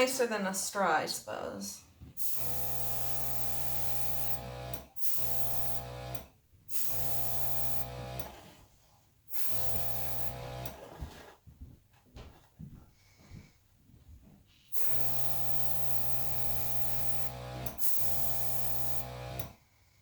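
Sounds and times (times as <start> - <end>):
air hissing: 2.2 - 4.4, 6.7 - 8.3, 9.3 - 10.4, 14.7 - 19.1
air compressor motor hum: 2.2 - 8.6, 9.3 - 11.3, 14.7 - 19.6.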